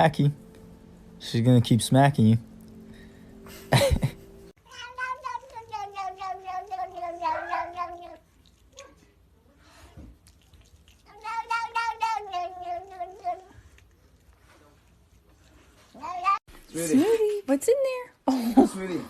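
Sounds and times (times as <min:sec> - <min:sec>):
cat yowling: 0:04.6 - 0:08.2, 0:11.1 - 0:13.5.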